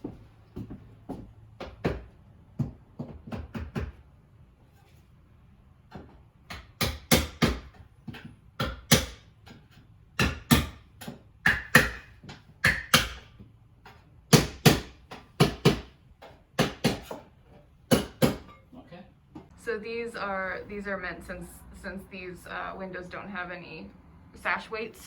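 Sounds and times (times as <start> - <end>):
hammer tapping nails: 5.9 - 17.3.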